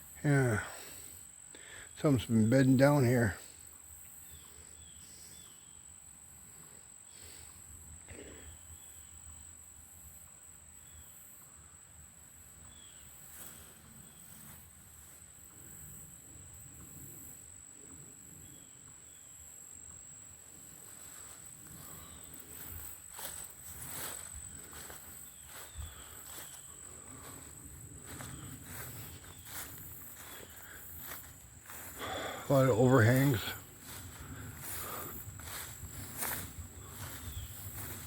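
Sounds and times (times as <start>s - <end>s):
faint insect chirps: 0.0s - 38.0s
high-pitched insect drone: 20.2s - 38.0s
footsteps in undergrowth: 20.8s - 38.0s.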